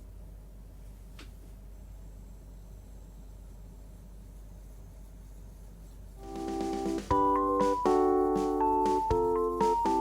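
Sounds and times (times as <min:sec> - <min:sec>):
faint low hum: 0:00.0 - 0:10.0
keyboard chords: 0:06.2 - 0:10.0.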